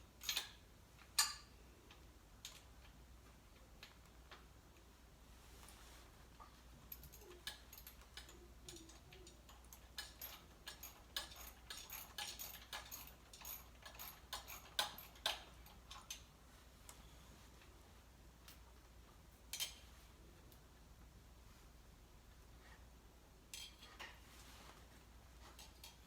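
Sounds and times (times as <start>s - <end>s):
hand tools clicking and tapping: 6.9s - 16.3s.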